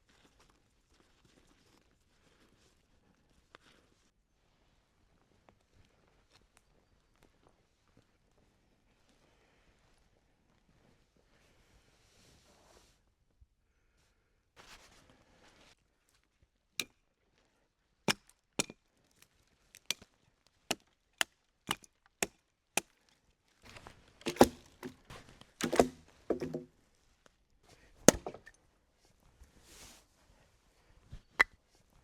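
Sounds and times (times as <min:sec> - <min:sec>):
wood cracking and splitting: 0:18.1 - 0:18.8, 0:20.7 - 0:23.0, 0:23.7 - 0:26.7, 0:28.0 - 0:28.5
blade chopping wood knocks: 0:24.2 - 0:26.7, 0:28.1 - 0:28.5.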